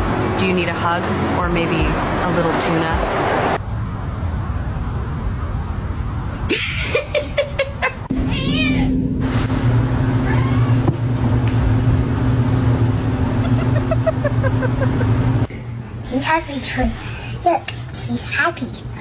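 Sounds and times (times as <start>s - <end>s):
cat meowing: 8.2s - 9.0s
steady low hum: 8.9s - 19.0s.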